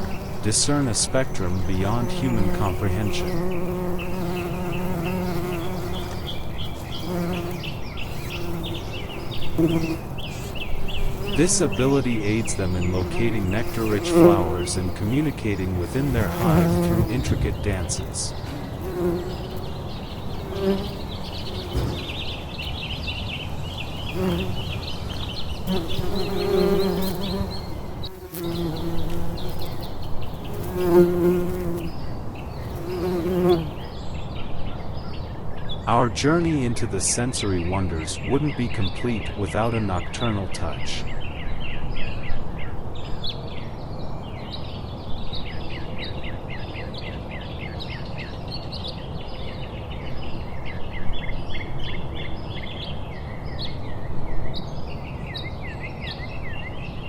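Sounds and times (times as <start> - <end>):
bees buzzing: 0.0 - 34.0.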